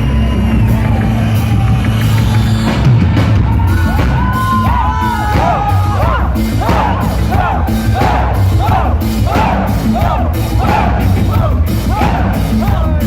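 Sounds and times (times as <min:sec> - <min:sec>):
crowd shouting and cheering: 0:00.0 - 0:13.0
live rock band music: 0:00.0 - 0:13.0.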